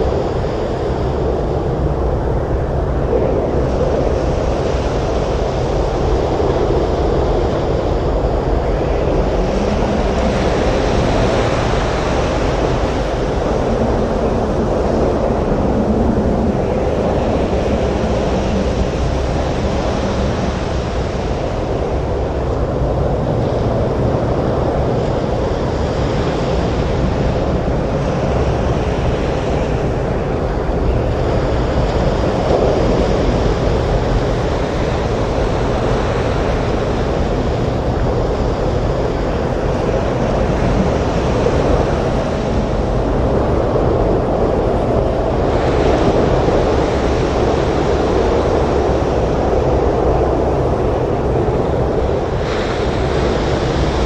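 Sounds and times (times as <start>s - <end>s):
strong wind: 0.0s - 54.0s
surf breaking on a beach: 0.0s - 54.0s.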